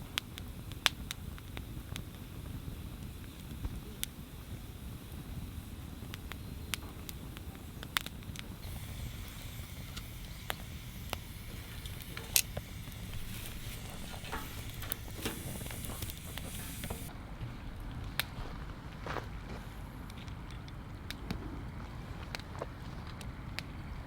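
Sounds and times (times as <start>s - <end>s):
campfire crackling and popping: 0.0s - 17.1s.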